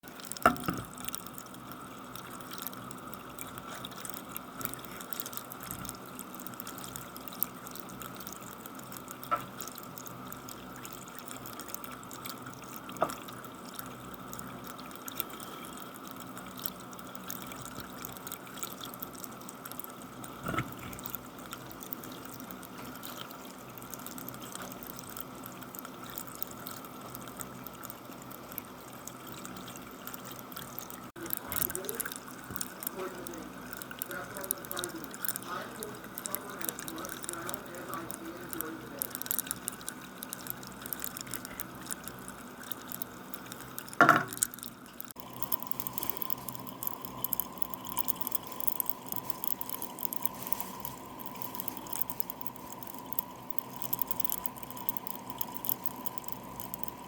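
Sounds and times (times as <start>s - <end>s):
drink fizzing and crackling: 0.0s - 57.0s.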